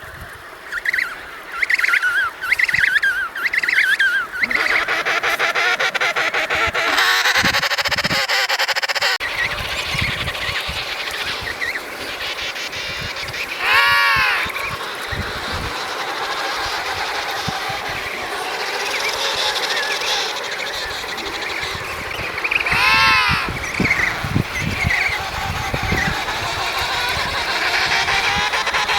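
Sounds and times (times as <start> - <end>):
wind: 0.0 - 28.9
distant penguin calls: 0.7 - 28.9
loud penguin call rising and falling: 2.0 - 9.2, 13.6 - 21.8, 22.5 - 24.2.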